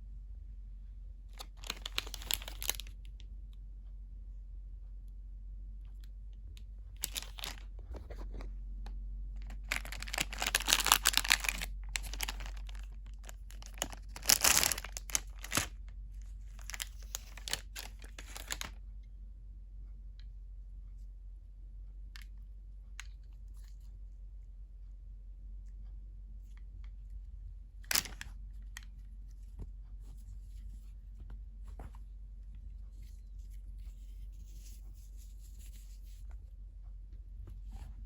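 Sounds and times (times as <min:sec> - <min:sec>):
plastic packaging crinkling: 0:01.4 - 0:03.0, 0:07.0 - 0:08.5, 0:09.4 - 0:15.8, 0:16.5 - 0:18.8, 0:27.9 - 0:28.3.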